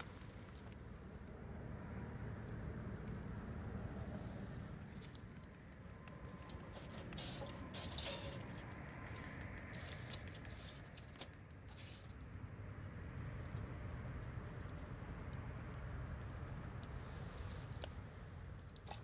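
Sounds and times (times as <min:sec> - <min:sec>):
campfire crackles: 0:00.0 - 0:19.0
low steady rumble: 0:00.0 - 0:19.0.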